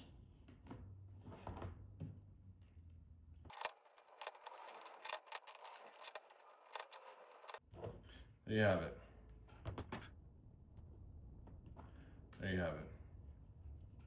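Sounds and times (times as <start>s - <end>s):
plastic parts clicking and rattling: 3.5s - 7.6s.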